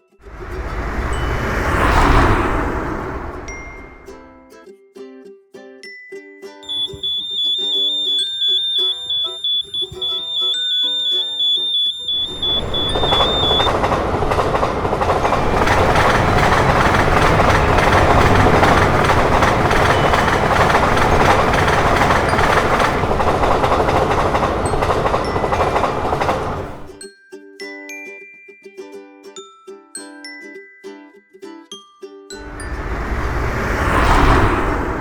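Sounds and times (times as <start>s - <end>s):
train wheels clattering on rails: 0.3s - 4.1s, 12.2s - 26.9s, 32.4s - 35.0s
music: 4.0s - 11.9s, 23.8s - 33.0s
level-crossing alarm two-tone beep: 6.7s - 26.8s.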